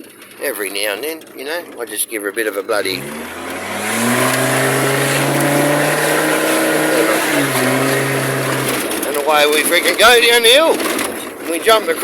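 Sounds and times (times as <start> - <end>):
engine revving hard: 2.8 - 9.0.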